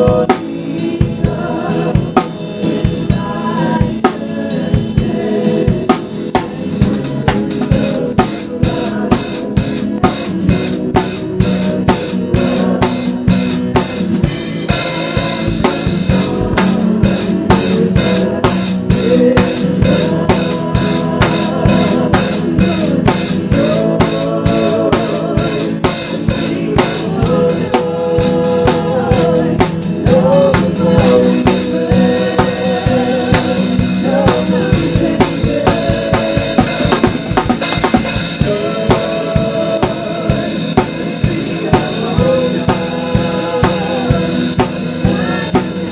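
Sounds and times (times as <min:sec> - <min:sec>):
sustained organ chords: 0:00.0 - 0:45.9
worship band music: 0:00.0 - 0:45.9
snare and cymbal hits: 0:20.3 - 0:45.9.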